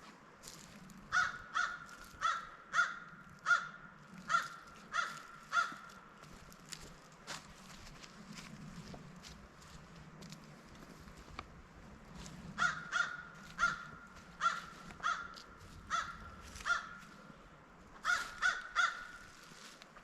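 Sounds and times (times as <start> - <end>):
bird calling: 1.1 - 6.1, 12.5 - 17.2, 18.0 - 19.4.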